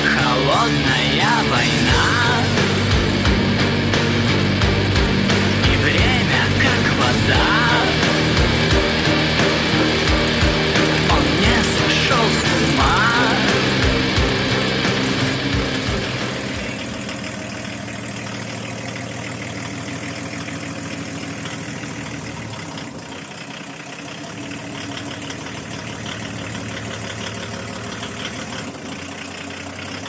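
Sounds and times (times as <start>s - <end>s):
music: 0.0s - 16.9s
car engine idling: 0.0s - 30.0s.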